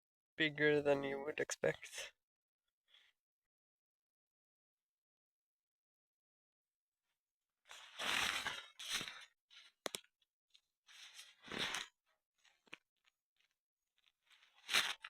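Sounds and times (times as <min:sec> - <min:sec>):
footsteps crunching on forest ground: 0:07.8 - 0:09.3.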